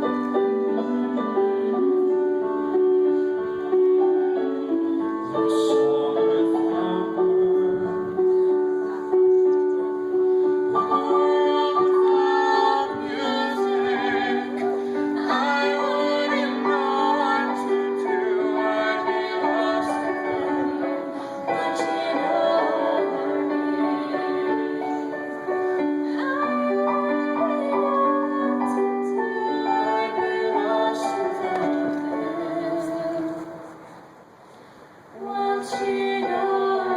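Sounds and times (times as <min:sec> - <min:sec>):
keyboard accompaniment: 0:00.0 - 0:36.9
woman singing slow song: 0:26.1 - 0:33.9, 0:35.2 - 0:36.9.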